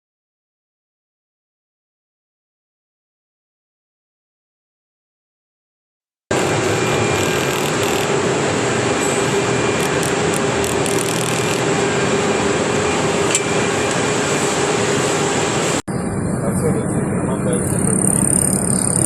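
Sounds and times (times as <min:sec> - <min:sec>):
faint high whine: 0:06.3 - 0:19.0
machine humming: 0:06.3 - 0:19.0.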